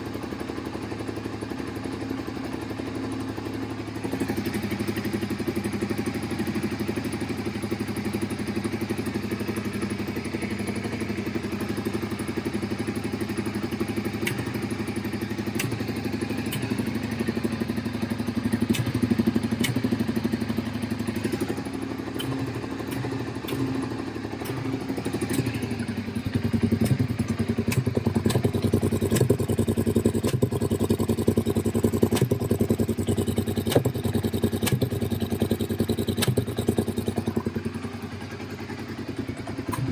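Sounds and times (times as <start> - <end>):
motorcycle engine running: 0.0 - 39.9
sharp clicks: 14.2 - 14.5, 15.6 - 15.8, 16.5 - 16.8, 18.7 - 19.0, 19.6 - 20.0, 22.2 - 25.6, 26.3 - 30.7, 33.0 - 35.3, 36.1 - 37.2, 39.6 - 39.9.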